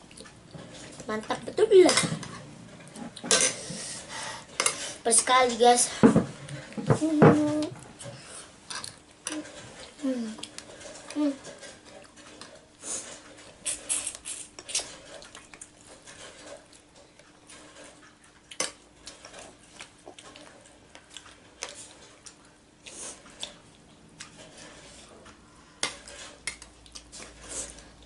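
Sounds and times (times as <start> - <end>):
cutlery clinking against bowls: 3.1 - 3.6.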